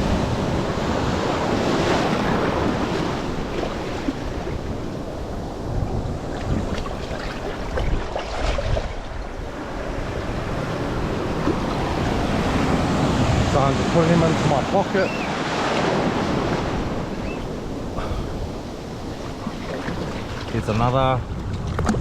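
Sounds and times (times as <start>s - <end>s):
waves washing in surf: 0.0s - 22.0s
wind buffeting microphone: 0.0s - 22.0s.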